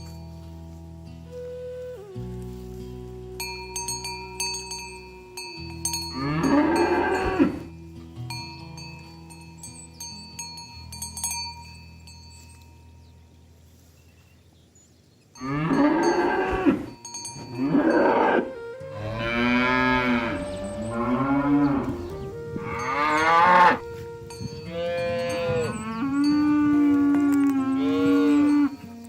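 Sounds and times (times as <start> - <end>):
cattle mooing: 6.0 - 7.8, 15.4 - 24.0, 24.7 - 29.0.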